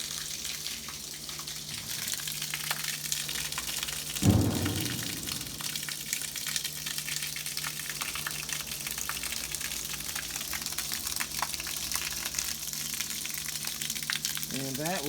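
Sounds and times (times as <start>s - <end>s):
water gushing and splashing: 4.0s - 6.4s.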